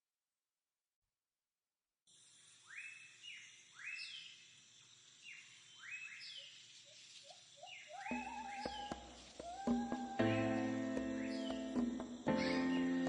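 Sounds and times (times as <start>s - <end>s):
background hiss: 2.1s - 13.0s
rising bird calls: 5.3s - 13.0s
music: 8.1s - 13.0s.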